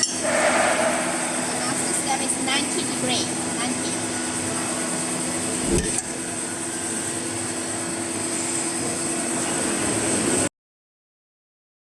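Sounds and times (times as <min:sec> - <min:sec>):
faint high whine: 0:00.0 - 0:08.6.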